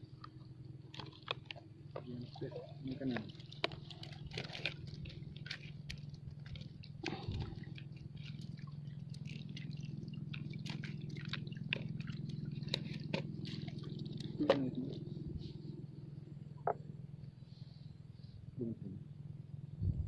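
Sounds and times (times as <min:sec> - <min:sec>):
small wet clicks and ticks: 0:00.0 - 0:15.6
steady low hum: 0:00.0 - 0:20.0.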